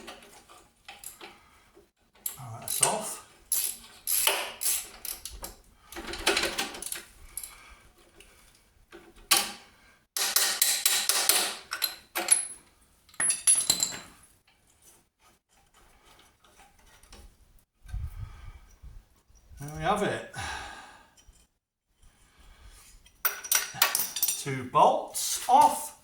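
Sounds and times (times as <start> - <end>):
metal tools clattering and scraping: 2.2 - 8.6, 11.6 - 17.2, 22.8 - 24.6.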